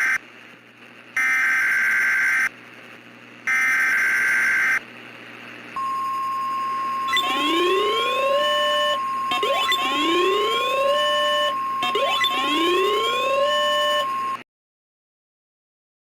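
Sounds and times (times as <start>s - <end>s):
rising siren-like tones: 5.8s - 14.4s
steady warning alarm tone: 5.8s - 14.4s
warbling digital data tones: 5.8s - 14.4s.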